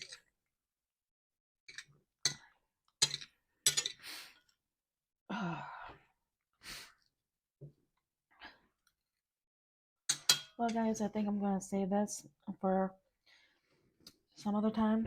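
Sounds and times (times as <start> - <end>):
woman sighing: 5.3 - 6.1.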